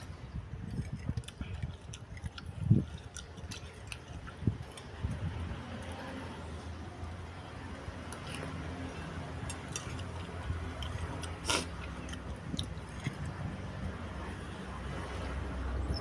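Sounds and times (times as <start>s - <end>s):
chewing food: 0.0s - 7.3s, 8.0s - 14.0s.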